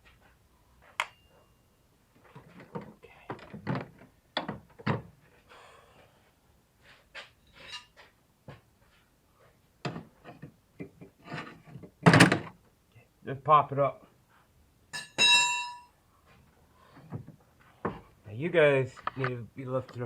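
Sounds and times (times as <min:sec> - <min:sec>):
tools knocking and clicking: 0:02.3 - 0:05.0, 0:15.0 - 0:15.8
metal scrape: 0:07.5 - 0:08.0.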